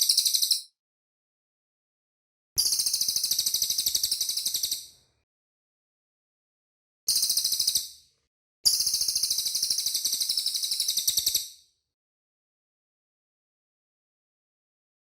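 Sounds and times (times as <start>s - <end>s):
songbird high-pitched trills: 0.0s - 0.8s.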